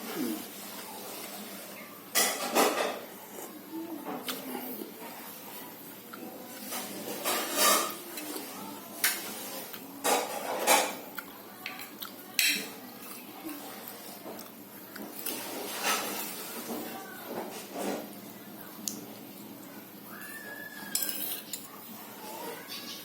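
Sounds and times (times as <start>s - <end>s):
spoon clinking on plate: 20.9s - 21.7s.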